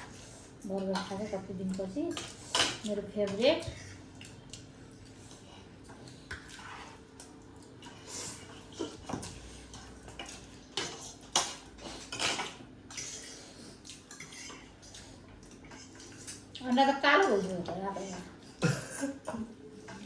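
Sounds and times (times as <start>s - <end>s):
cutlery and dishes clinking: 10.2s - 13.1s.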